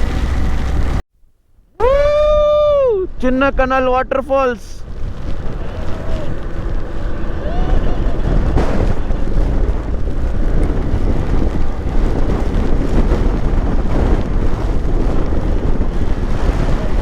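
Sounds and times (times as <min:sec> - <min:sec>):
motorcycle engine running: 0:00.0 - 0:01.0, 0:04.8 - 0:17.0
wind buffeting microphone: 0:00.0 - 0:01.0, 0:01.8 - 0:17.0.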